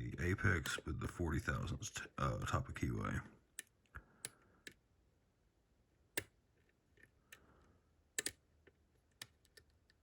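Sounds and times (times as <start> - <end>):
faint metallic lock picking clicks: 8.2 - 10.0.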